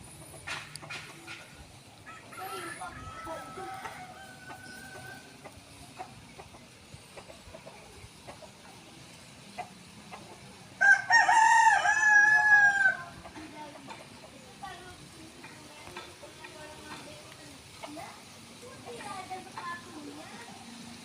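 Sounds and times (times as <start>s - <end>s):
rooster crowing: 2.0s - 5.4s, 10.8s - 13.2s.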